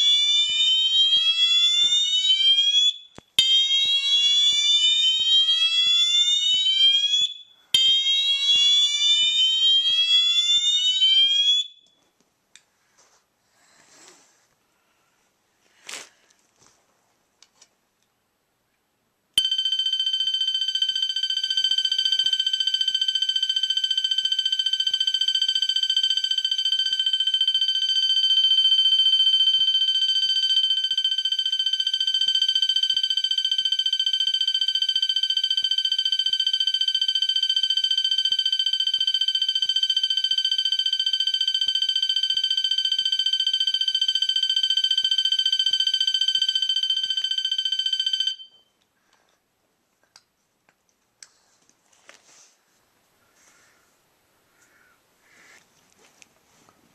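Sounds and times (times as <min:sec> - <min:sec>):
fire alarm horn tone: 0:00.0 - 0:12.0, 0:19.4 - 0:48.7.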